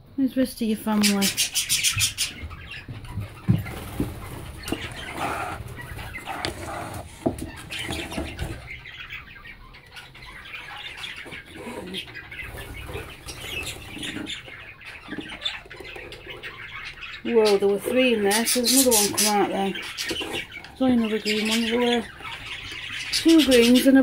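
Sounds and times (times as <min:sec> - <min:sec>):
budgerigars chirping: 0:00.8 - 0:24.0.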